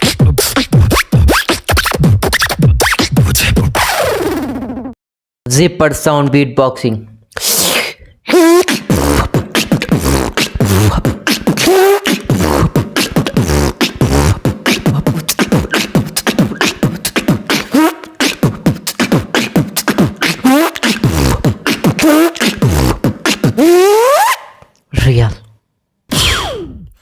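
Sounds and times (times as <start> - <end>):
beatboxing clicks and rasps: 0.0 - 4.1, 7.3 - 24.9, 26.1 - 27.0
beatboxed bass kicks: 0.0 - 4.2, 8.3 - 24.2, 26.1 - 27.0.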